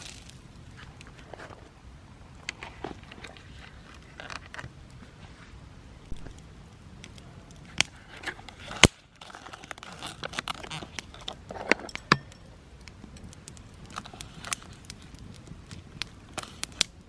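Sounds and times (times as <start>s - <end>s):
scraping and rustling: 0.0s - 1.8s, 2.4s - 6.4s.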